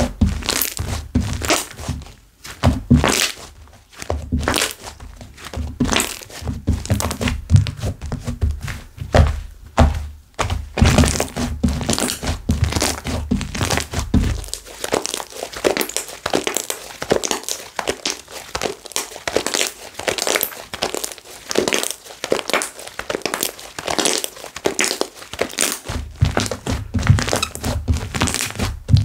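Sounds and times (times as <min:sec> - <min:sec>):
slime crackling and popping: 0:00.4 - 0:01.7, 0:10.8 - 0:29.0
slime pressed thuds: 0:05.6 - 0:15.2, 0:25.9 - 0:29.0.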